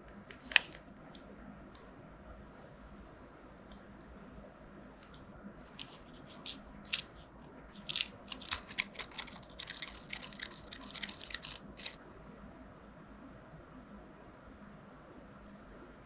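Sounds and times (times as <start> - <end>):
crisp crackling and clicking: 5.0 - 12.0.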